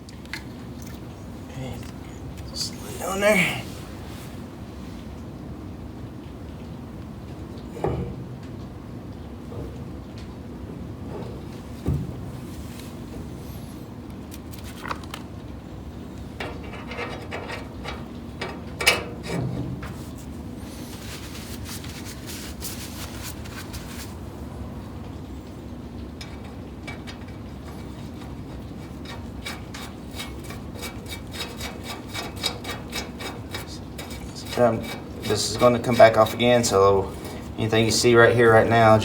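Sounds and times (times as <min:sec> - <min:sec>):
metallic clicks and scraping: 0:16.2 - 0:20.3, 0:26.1 - 0:38.1.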